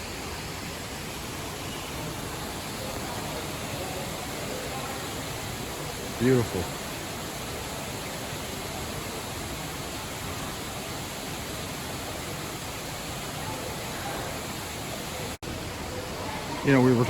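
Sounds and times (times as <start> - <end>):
running water rushing: 0.0 - 17.0.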